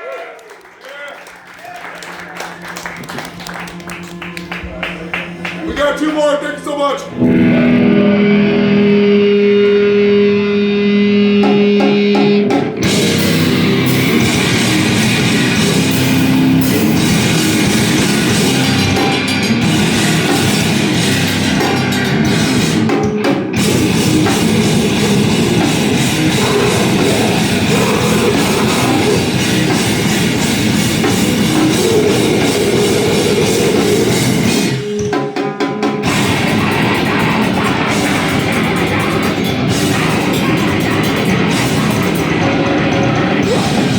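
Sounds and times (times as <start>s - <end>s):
heavy rock band playing: 2.6s - 43.9s
distorted electric guitar: 2.8s - 43.9s
drum kit: 11.1s - 43.9s.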